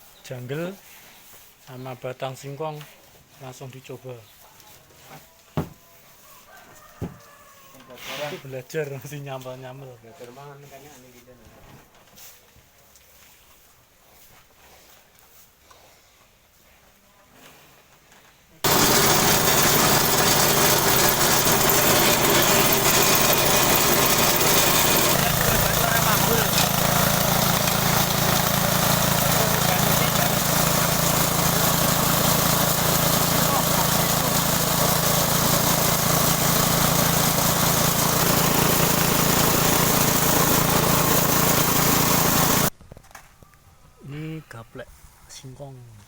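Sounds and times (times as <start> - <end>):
forage chopper running: 18.6 - 42.7.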